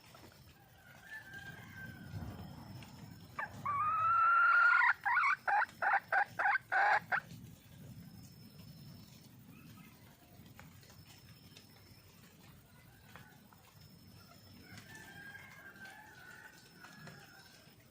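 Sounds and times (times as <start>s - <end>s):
junglefowl hen calling: 3.4s - 7.2s.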